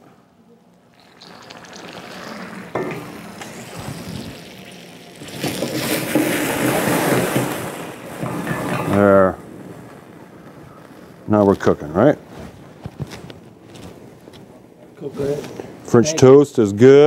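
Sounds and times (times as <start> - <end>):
pan sizzling loudly: 0.9 - 9.6.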